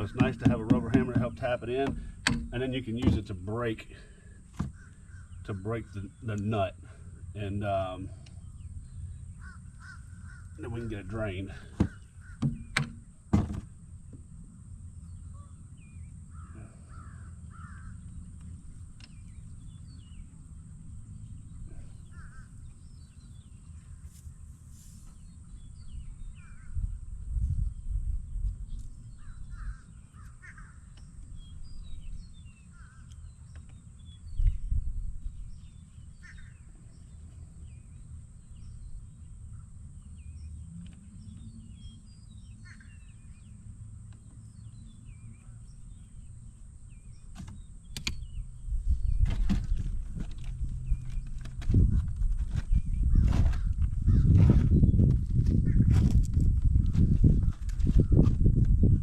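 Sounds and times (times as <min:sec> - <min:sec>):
sharp knocks: 0:00.1 - 0:03.3, 0:11.8 - 0:13.7
crows cawing: 0:04.6 - 0:05.4, 0:09.3 - 0:10.6, 0:11.8 - 0:12.7, 0:16.3 - 0:18.0, 0:22.1 - 0:22.6, 0:29.2 - 0:30.9.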